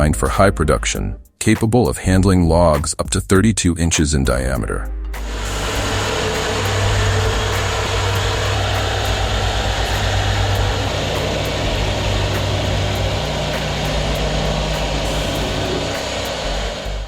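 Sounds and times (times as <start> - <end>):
sawmill machinery running: 5.2 - 17.0.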